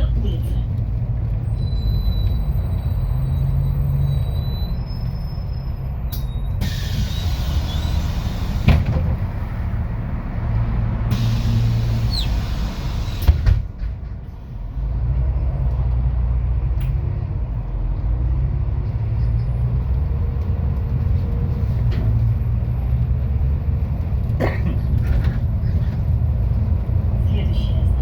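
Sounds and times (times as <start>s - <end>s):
bus diesel engine running: 0.0s - 28.0s
compressed air hiss: 6.6s - 8.7s, 11.1s - 13.4s.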